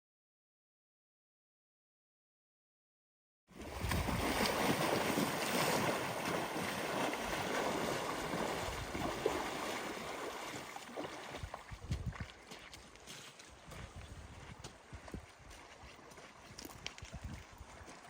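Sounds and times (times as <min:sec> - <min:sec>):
wind buffeting microphone: 0:03.7 - 0:05.2, 0:05.8 - 0:09.5, 0:11.3 - 0:12.4, 0:13.7 - 0:15.6, 0:16.7 - 0:18.0.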